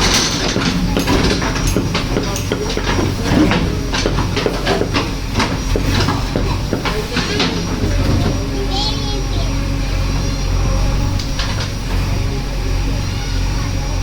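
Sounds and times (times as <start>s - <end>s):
metallic knocks and clatter: 0.0s - 8.7s, 11.1s - 12.2s
diesel engine under load: 0.0s - 14.0s.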